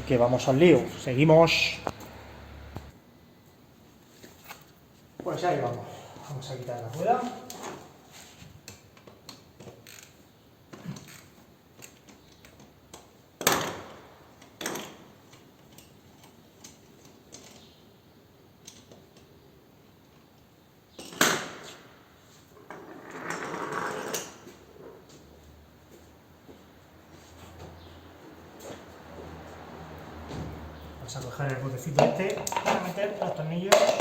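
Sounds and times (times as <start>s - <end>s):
hand tools being handled: 32.0s - 34.0s.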